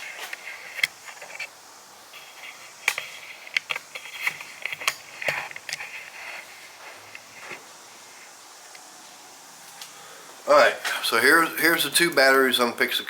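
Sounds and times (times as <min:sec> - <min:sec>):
scraping and rubbing: 0:02.1 - 0:08.3.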